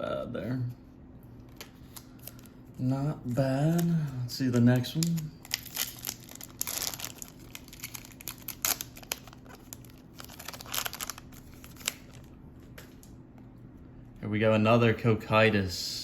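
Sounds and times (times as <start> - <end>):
foil pack crinkling and tearing: 1.5 - 12.4.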